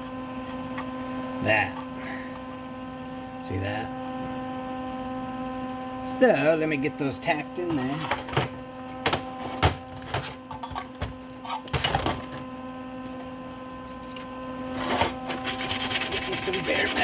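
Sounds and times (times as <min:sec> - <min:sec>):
steady electrical hum: 0:00.0 - 0:17.0.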